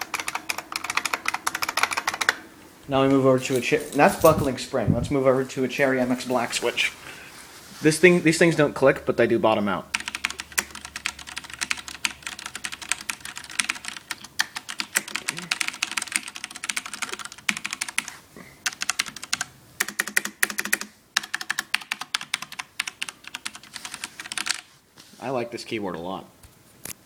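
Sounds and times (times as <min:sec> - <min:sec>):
fast typing on keyboard: 0:00.0 - 0:02.4, 0:09.9 - 0:24.7.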